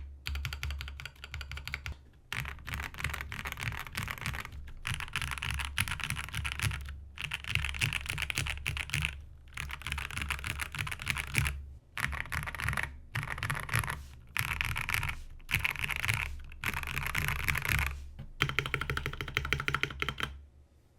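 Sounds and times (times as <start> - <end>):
mechanical keyboard typing: 0.0 - 20.4.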